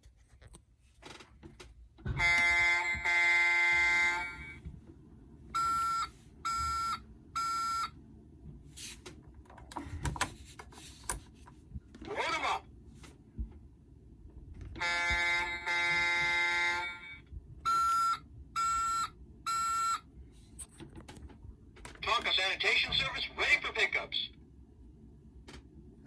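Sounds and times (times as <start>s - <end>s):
electronic buzzer: 2.2s - 4.6s, 14.8s - 18.9s.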